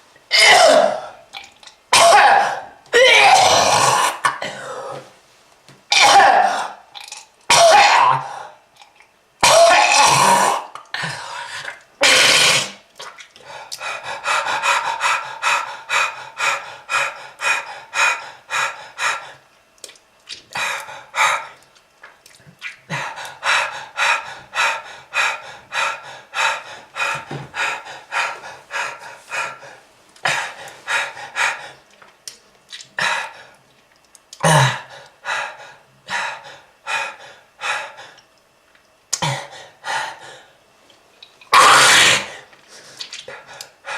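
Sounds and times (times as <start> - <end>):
person coughing: 0.3 - 1.1, 1.9 - 5.0
person breathing hard: 13.4 - 19.4, 22.9 - 31.8, 34.7 - 38.2, 39.2 - 40.6, 42.2 - 43.9.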